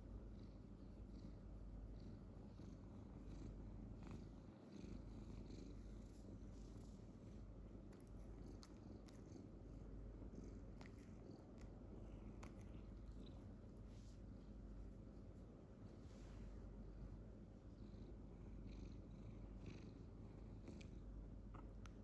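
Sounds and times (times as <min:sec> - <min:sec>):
cat purring: 0:00.2 - 0:15.9, 0:16.7 - 0:21.7
faint clicks: 0:10.7 - 0:12.7.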